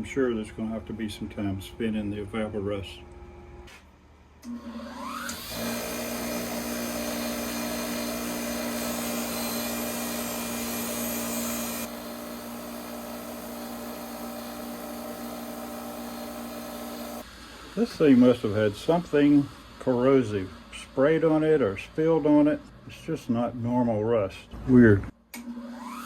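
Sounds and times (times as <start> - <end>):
power tool wire brush scouring rust: 5.2 - 17.2.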